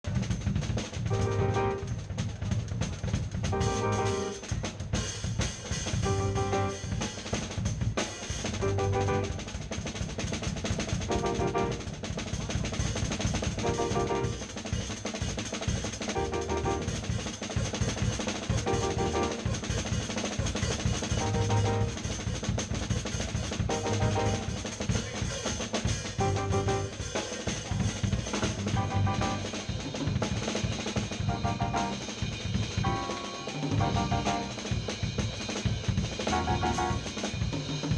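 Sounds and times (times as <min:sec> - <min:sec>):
bass line: 0:00.0 - 0:05.0, 0:05.9 - 0:09.7, 0:10.8 - 0:14.6, 0:16.1 - 0:17.2, 0:18.5 - 0:19.9, 0:20.5 - 0:22.6, 0:23.4 - 0:25.0, 0:26.1 - 0:27.0, 0:27.6 - 0:37.9
drum kit groove: 0:00.0 - 0:37.9
held keyboard chords: 0:01.0 - 0:02.0, 0:03.4 - 0:04.6, 0:06.0 - 0:07.0, 0:08.6 - 0:09.6, 0:11.0 - 0:12.0, 0:13.6 - 0:14.5, 0:16.1 - 0:17.1, 0:18.6 - 0:19.6, 0:21.1 - 0:22.0, 0:23.6 - 0:24.8, 0:26.2 - 0:27.0, 0:28.6 - 0:29.9, 0:31.2 - 0:35.0, 0:36.2 - 0:37.3.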